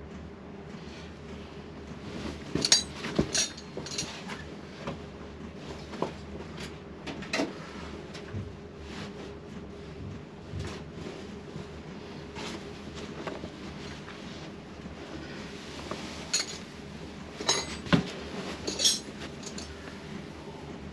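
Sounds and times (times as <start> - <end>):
steady low hum: 0.0 - 20.9
metal tools clinking: 2.6 - 4.1, 16.4 - 16.6, 17.5 - 17.8, 18.7 - 19.7.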